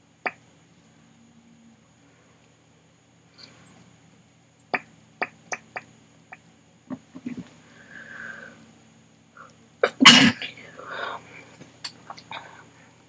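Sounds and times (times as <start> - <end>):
soft breathy inhale: 7.6 - 8.6, 10.6 - 11.6.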